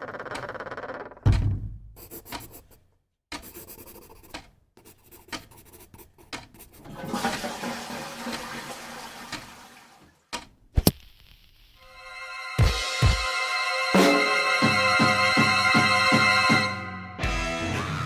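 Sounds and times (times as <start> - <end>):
scratchy clicking: 2.0 - 6.8.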